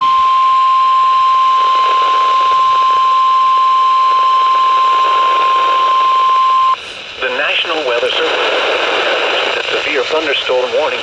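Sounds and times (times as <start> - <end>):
steady alarm tone: 0.0 - 6.8
radio static hiss: 1.2 - 11.0.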